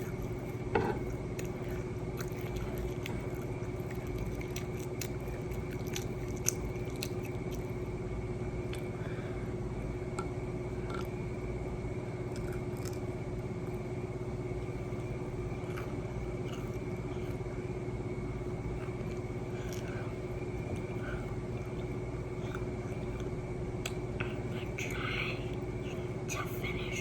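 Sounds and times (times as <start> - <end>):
quiet chewing: 0.0 - 8.0, 12.2 - 13.9, 14.7 - 17.5, 18.3 - 26.8
low background hum: 0.0 - 27.0
soft mouth clicks: 22.5 - 25.6.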